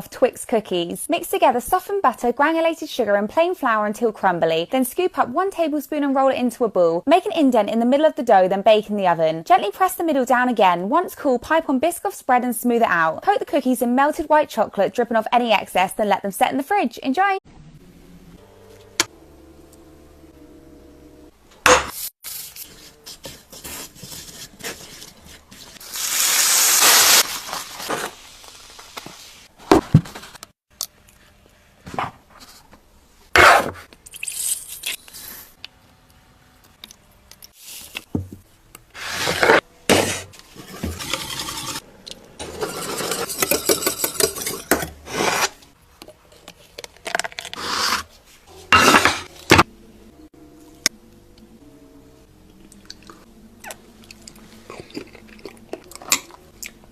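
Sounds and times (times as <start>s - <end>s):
utensils scraping and clinking dishes: 39.0s - 41.8s, 42.4s - 45.6s, 47.6s - 49.6s.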